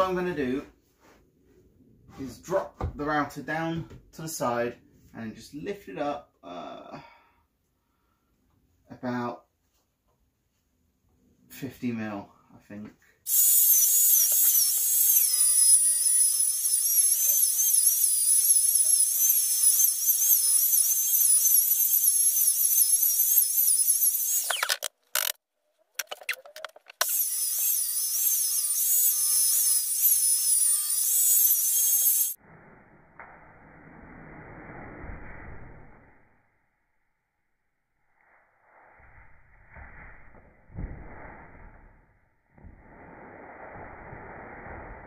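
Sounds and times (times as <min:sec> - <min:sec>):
wood router cutting wood: 0:13.3 - 0:25.4, 0:27.0 - 0:32.4.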